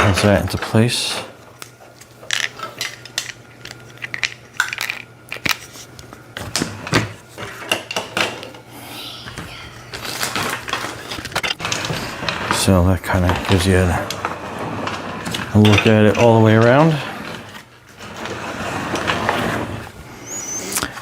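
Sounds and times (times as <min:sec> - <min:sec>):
plastic toy parts clattering: 0:02.2 - 0:05.8.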